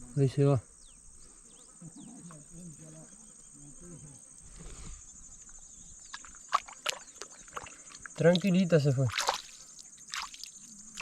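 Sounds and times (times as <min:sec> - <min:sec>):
high-pitched insect chorus: 0:00.0 - 0:11.0
sharp splashy clicks: 0:06.1 - 0:11.0.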